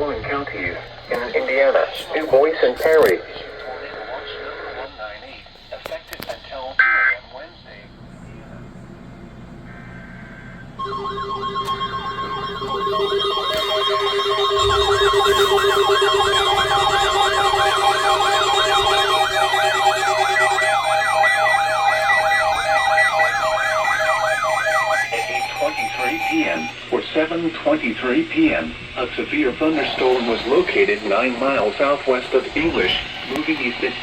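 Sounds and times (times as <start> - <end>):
warbling siren-like alert: 7.9 - 27.6
steady and beeping alert tones: 8.0 - 26.8.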